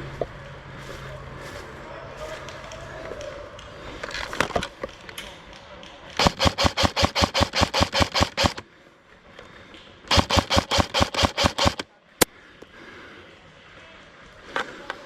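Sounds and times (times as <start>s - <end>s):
airsoft gun firing: 6.2s - 8.6s, 10.1s - 11.9s.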